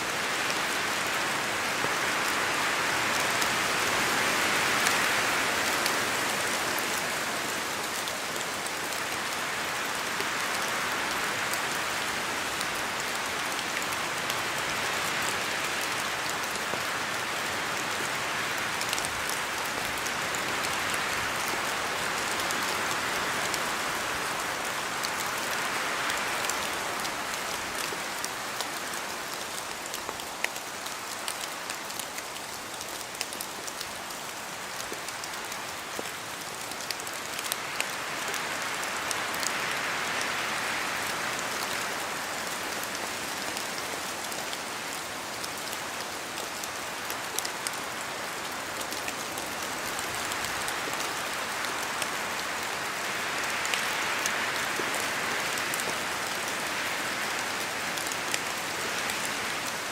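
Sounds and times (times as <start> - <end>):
steady rain hiss: 0.0 - 59.9
drops ticking from trees: 15.4 - 40.4.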